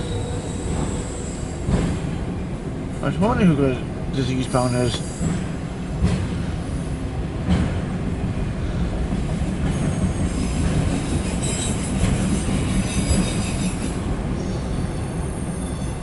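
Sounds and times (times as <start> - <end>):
train wheels rumbling on rail: 0.0 - 16.0.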